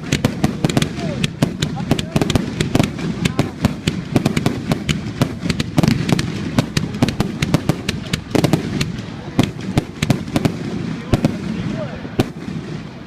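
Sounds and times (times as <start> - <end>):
continuous low rumble: 0.0 - 13.0
fireworks bangs and cracks: 0.0 - 13.0.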